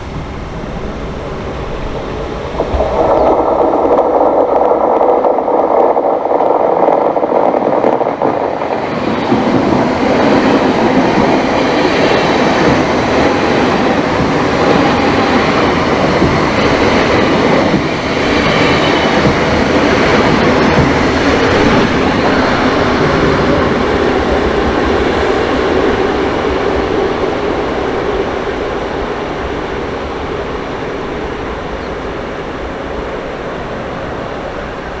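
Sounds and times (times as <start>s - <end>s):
steady tone: 0.0s - 6.5s
train wheels rattling over rails: 0.0s - 35.0s.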